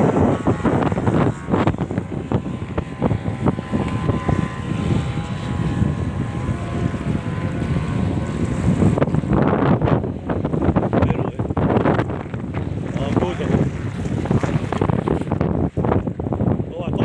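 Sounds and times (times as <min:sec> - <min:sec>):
boat engine droning: 0:00.0 - 0:17.0
wind buffeting microphone: 0:00.0 - 0:17.0.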